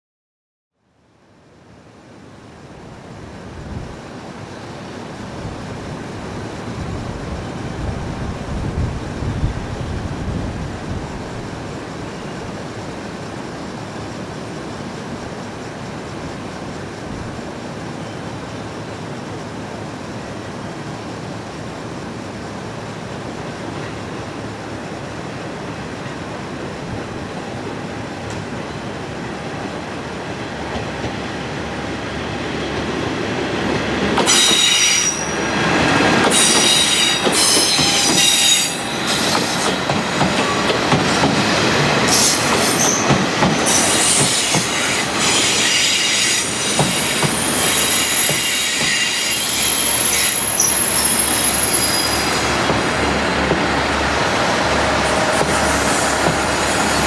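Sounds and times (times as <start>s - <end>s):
train rolling: 3.0s - 57.0s
train wheels squealing on rails: 27.4s - 57.0s.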